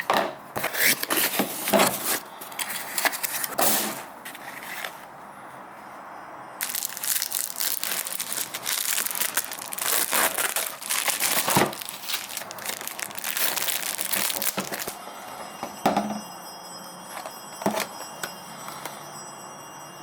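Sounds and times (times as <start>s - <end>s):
crinkling and crumpling: 6.6s - 15.0s, 17.2s - 18.3s.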